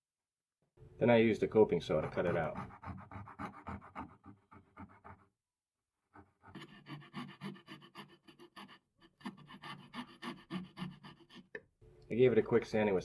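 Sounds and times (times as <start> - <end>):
hand saw cutting wood: 1.8 - 5.0, 6.4 - 11.6.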